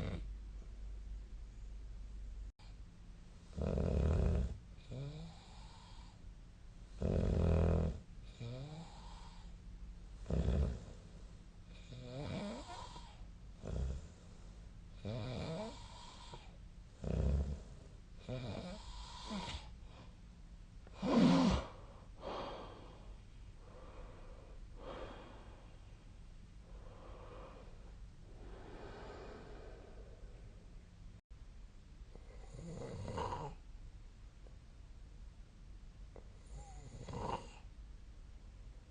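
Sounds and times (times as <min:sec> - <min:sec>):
person snoring: 0:03.5 - 0:06.2, 0:07.0 - 0:09.5, 0:10.2 - 0:11.0, 0:11.7 - 0:14.2, 0:15.0 - 0:19.7, 0:20.9 - 0:23.0, 0:26.7 - 0:30.6, 0:36.5 - 0:37.6.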